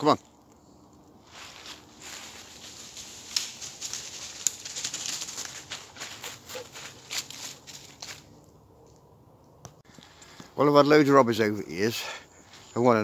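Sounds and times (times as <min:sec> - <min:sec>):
dry leaves and twigs crackling: 0:00.0 - 0:09.1
twigs snapping: 0:00.3 - 0:06.2.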